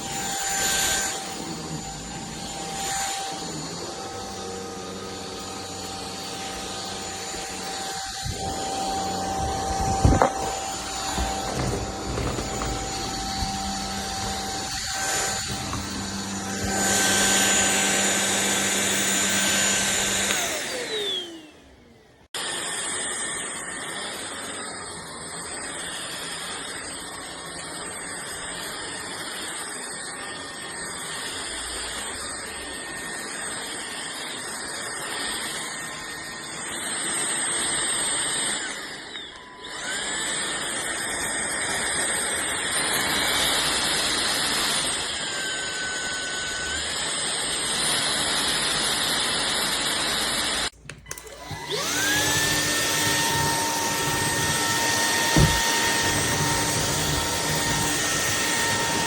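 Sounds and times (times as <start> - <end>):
stick vacuum running: 0.0 - 21.8, 31.8 - 59.0.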